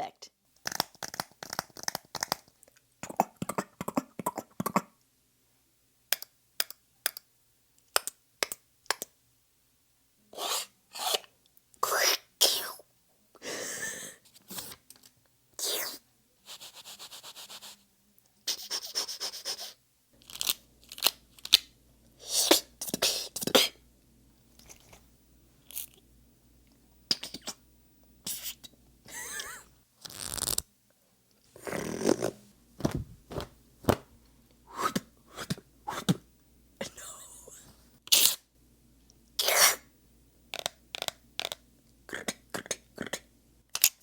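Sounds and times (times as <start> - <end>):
person beatboxing: 3.0 - 4.9.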